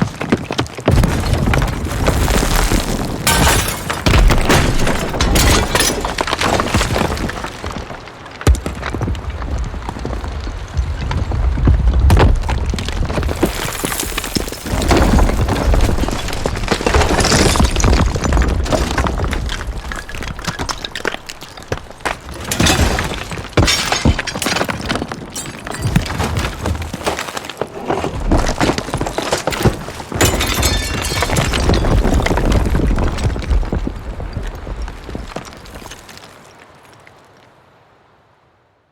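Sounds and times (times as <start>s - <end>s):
concrete and brick breaking: 0.0s - 8.9s, 13.2s - 33.7s
debris crashing and crumbling: 0.0s - 37.2s.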